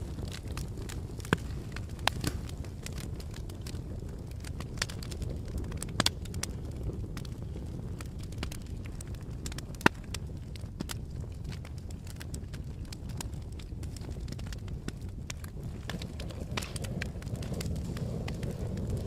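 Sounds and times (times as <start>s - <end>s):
campfire flames rumbling: 0.0s - 19.0s
fire crackling: 0.0s - 19.0s
wood popping in fire: 0.0s - 19.0s.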